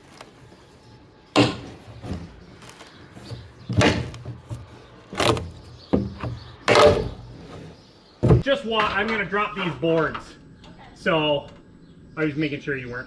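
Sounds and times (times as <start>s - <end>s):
wooden boards banging: 1.4s - 8.5s.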